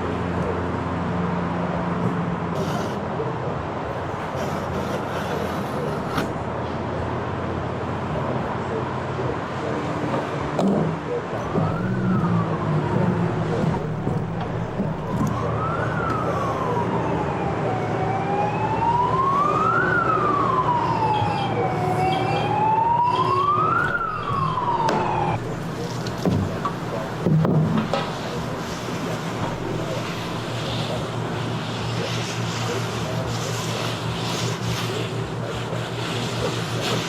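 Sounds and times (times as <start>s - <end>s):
traffic rumble: 0.0s - 37.0s
emergency siren wailing: 10.8s - 37.0s.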